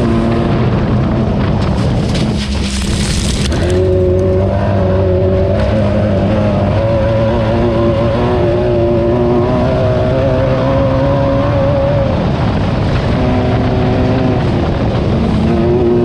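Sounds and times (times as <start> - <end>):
race car engine at high revs: 0.0 - 16.0
rough rattling noise: 1.2 - 5.6.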